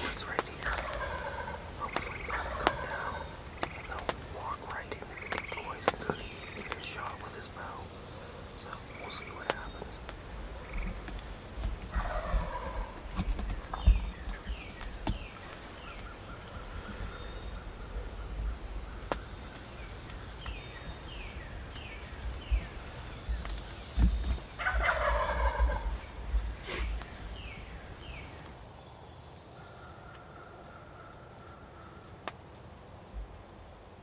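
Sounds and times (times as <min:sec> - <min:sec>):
turkey gobbling: 0:00.0 - 0:11.1, 0:11.8 - 0:13.9, 0:24.6 - 0:26.1
wind rumble on microphone: 0:00.0 - 0:28.7.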